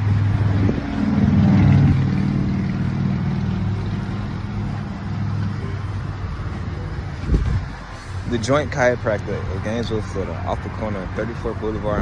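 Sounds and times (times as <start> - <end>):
vehicle engine speeding up: 0.0 - 8.7.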